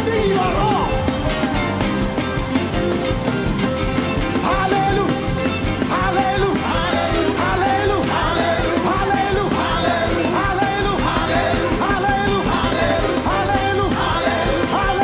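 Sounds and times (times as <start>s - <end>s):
band playing steady beat: 0.0s - 15.0s
voices singing: 4.3s - 15.0s.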